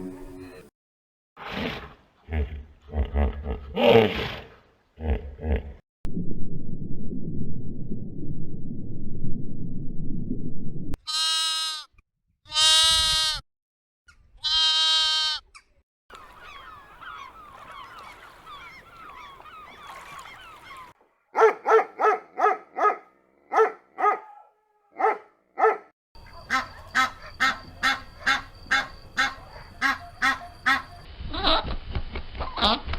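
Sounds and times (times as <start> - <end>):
long bleats: 11.1 - 11.9, 12.5 - 13.4, 14.4 - 15.4
waterfowl honking: 16.1 - 21.0, 26.5 - 31.0.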